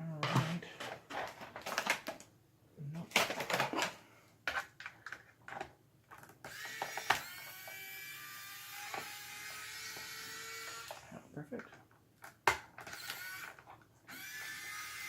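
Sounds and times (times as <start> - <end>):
plastic and tool clicks: 0.8 - 2.3, 3.1 - 7.8, 11.6 - 14.6
electric screwdriver motor whining: 6.4 - 11.1, 12.8 - 15.0.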